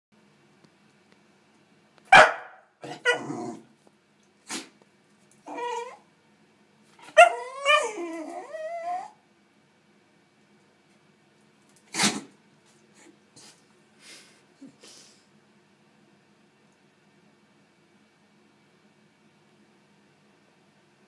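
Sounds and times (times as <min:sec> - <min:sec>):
dog whining: 0:02.8 - 0:03.6, 0:05.4 - 0:06.1, 0:07.0 - 0:09.2
dog sneezing: 0:04.4 - 0:04.8, 0:11.8 - 0:12.4.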